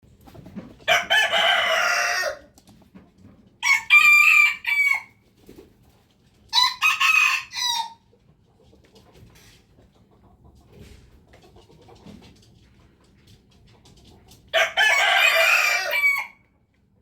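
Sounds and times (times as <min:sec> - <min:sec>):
roosters crowing: 0:00.8 - 0:02.5, 0:03.6 - 0:05.2, 0:06.5 - 0:08.0, 0:14.5 - 0:16.5.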